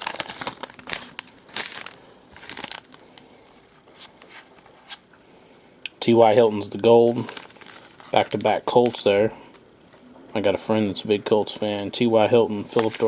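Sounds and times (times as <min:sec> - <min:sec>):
cards rustling: 0:00.0 - 0:05.0, 0:06.2 - 0:09.6, 0:12.6 - 0:13.0
wrapper crinkling: 0:00.0 - 0:05.0, 0:06.2 - 0:09.6, 0:12.6 - 0:13.0.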